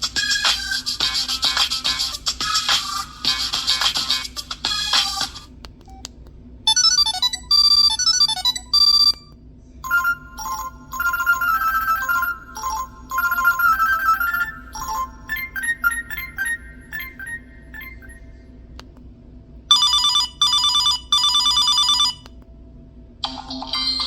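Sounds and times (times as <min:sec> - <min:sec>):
phone ringtones: 0:06.7 - 0:18.2, 0:19.7 - 0:22.2
quick high electronic beeps: 0:09.8 - 0:18.2.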